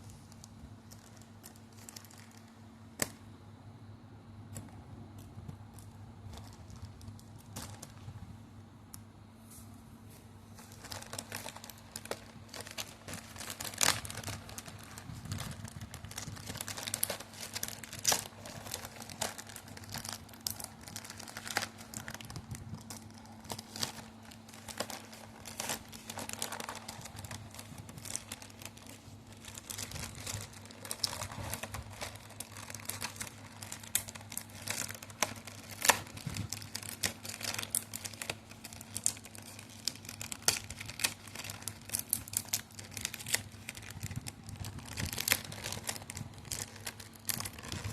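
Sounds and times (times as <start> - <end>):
packaging crinkling and tearing: 0.0 - 3.2, 4.5 - 8.3, 10.5 - 47.9
faint low hum: 0.0 - 47.9.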